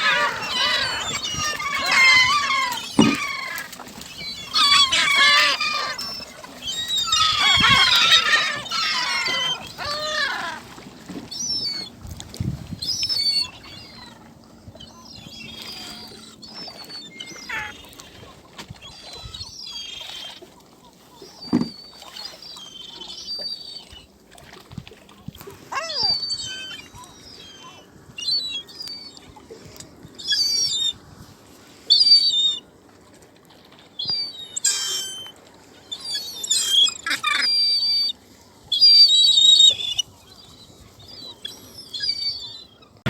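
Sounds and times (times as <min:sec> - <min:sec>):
gulls calling: 0:00.0 - 0:12.0, 0:12.8 - 0:24.1, 0:34.0 - 0:43.0
dull thumps: 0:21.5 - 0:21.7.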